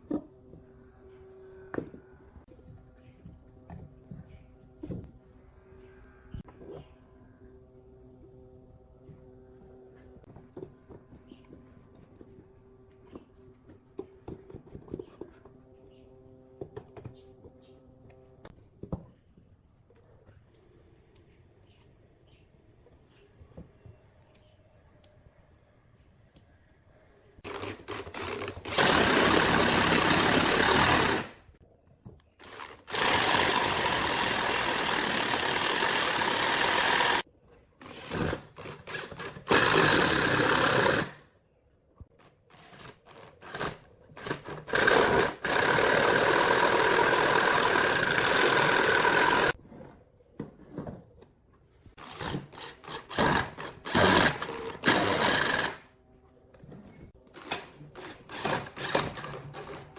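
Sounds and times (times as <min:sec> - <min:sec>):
power tool working wood: 0:27.5 - 0:31.4, 0:32.4 - 0:37.2, 0:38.0 - 0:41.2, 0:43.4 - 0:49.6, 0:52.1 - 0:55.8.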